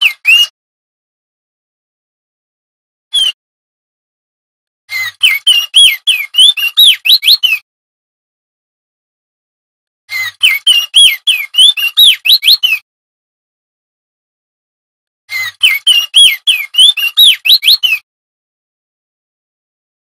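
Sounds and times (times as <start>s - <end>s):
bird singing whistled notes: 0.0s - 0.5s, 3.1s - 3.4s, 5.0s - 7.6s, 10.1s - 12.8s, 15.4s - 18.0s.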